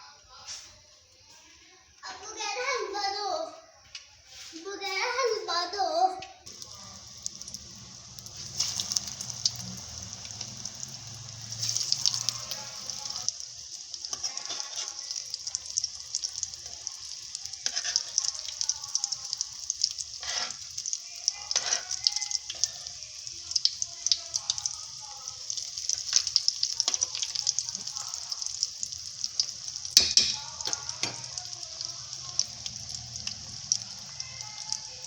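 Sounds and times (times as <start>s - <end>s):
food sizzling in hot oil: 6.4s - 35.0s
oil popping: 6.5s - 13.4s, 14.0s - 35.0s.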